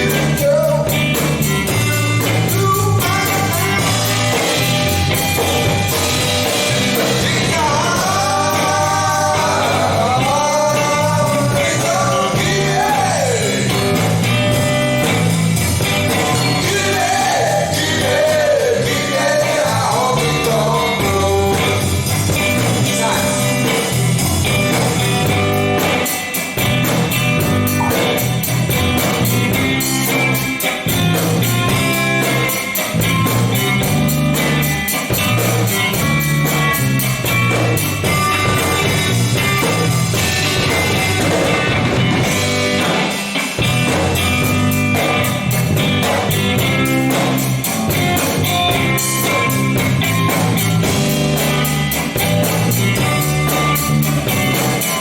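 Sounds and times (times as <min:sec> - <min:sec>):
person singing: 0:00.0 - 0:04.2, 0:07.0 - 0:14.2, 0:16.1 - 0:24.0
bass guitar: 0:00.0 - 0:55.0
drum beat: 0:00.0 - 0:55.0
electric guitar: 0:00.0 - 0:55.0.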